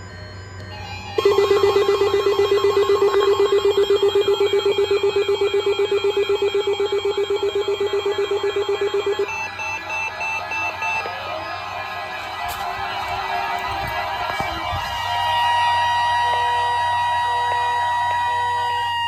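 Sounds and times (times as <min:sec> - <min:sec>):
weather alert radio alarm: 0:00.1 - 0:19.0.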